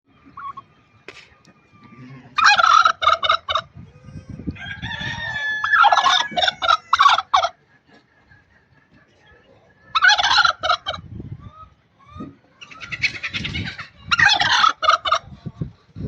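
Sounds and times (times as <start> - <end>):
turkey gobbling: 0.1 - 4.2, 5.0 - 15.6.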